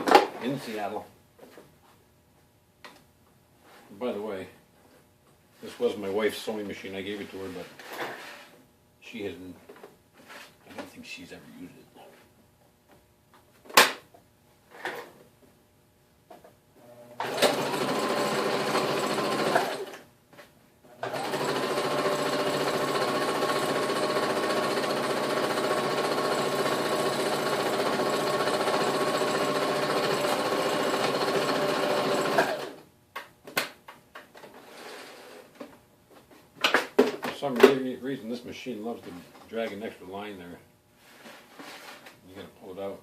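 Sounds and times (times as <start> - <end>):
sewing machine stitching: 17.2 - 20.0, 21.0 - 32.8.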